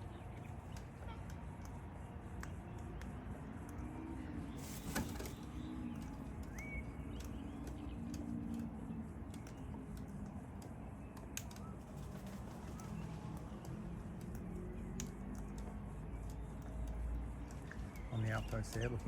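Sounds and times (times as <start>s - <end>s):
faint clicks: 0.0s - 19.0s
steady low hum: 0.0s - 19.0s
bird wing flaps: 4.6s - 6.5s, 11.4s - 13.5s.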